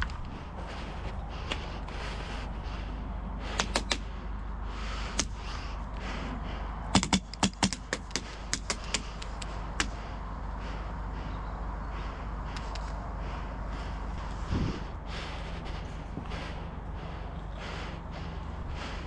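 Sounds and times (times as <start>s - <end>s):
airsoft rifle shots: 7.0s - 9.0s.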